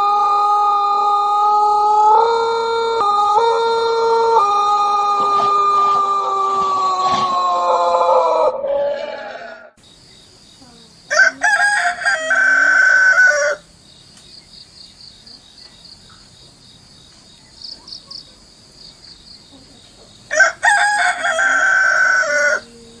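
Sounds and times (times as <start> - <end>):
rooster crowing: 0.0 - 9.8, 11.1 - 13.7, 20.3 - 23.0
insects trilling: 9.8 - 23.0.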